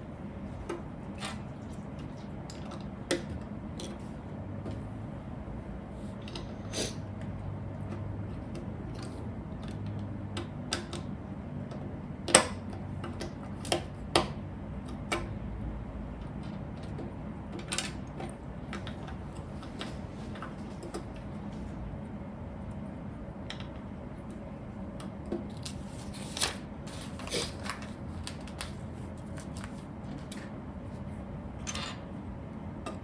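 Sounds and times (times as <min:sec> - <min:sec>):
low steady hum: 0:00.0 - 0:33.0.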